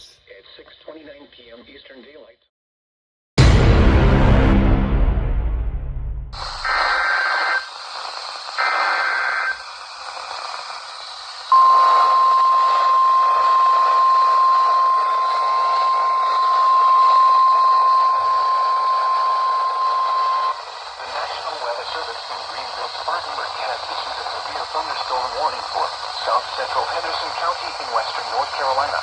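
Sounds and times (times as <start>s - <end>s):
radio static hiss: 6.4s - 29.0s
screeching digital header bursts: 6.4s - 29.0s
steady warning alarm tone: 11.5s - 28.8s.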